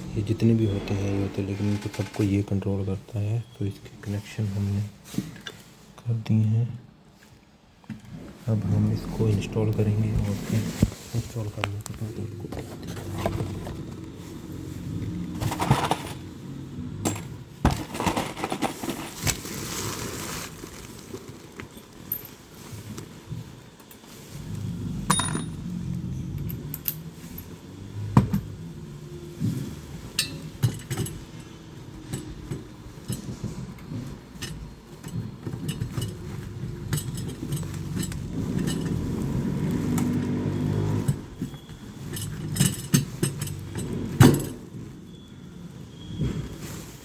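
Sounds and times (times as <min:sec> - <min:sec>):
low rumble: 0:00.0 - 0:02.3, 0:08.4 - 0:11.3
metal tools clinking and knocking: 0:15.4 - 0:16.2, 0:17.0 - 0:19.3, 0:25.1 - 0:25.6, 0:30.2 - 0:33.4, 0:34.4 - 0:39.1, 0:41.1 - 0:44.6.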